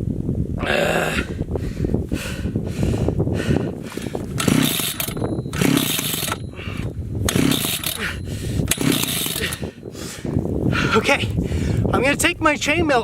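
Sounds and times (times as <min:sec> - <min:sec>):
chainsaw engine cranking: 0:03.9 - 0:09.6
chainsaw starter rope yanked: 0:03.9 - 0:09.7.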